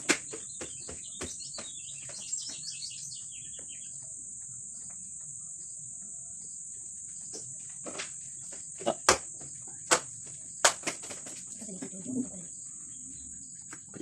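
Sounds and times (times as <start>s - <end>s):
insects droning high-pitched: 0.1s - 14.0s.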